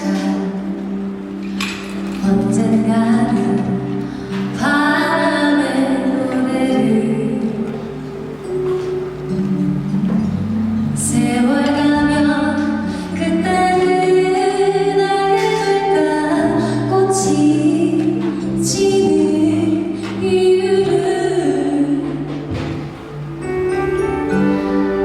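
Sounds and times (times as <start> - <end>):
instrumental music: 0.0 - 25.0
woman singing long notes: 10.9 - 22.4.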